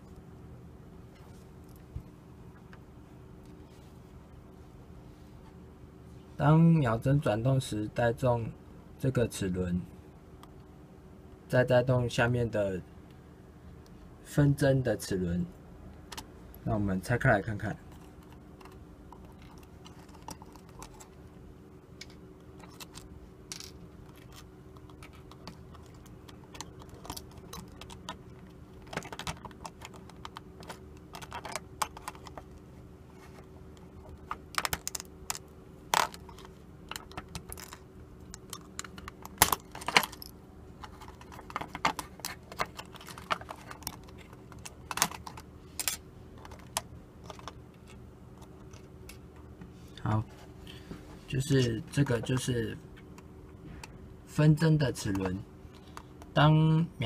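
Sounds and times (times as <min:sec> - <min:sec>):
plastic parts clicking and rattling: 0:17.9 - 0:21.2, 0:22.0 - 0:32.6, 0:34.0 - 0:49.2.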